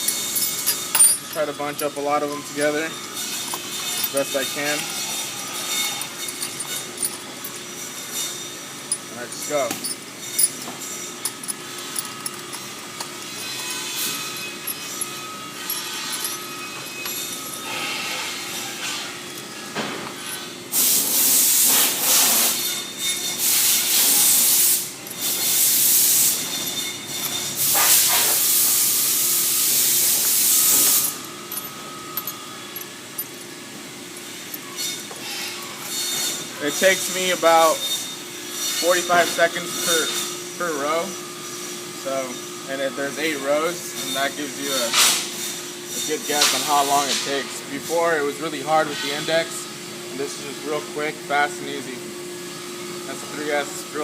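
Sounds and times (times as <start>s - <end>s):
metal drill bits clinking: 0.0s - 17.8s, 30.0s - 33.5s.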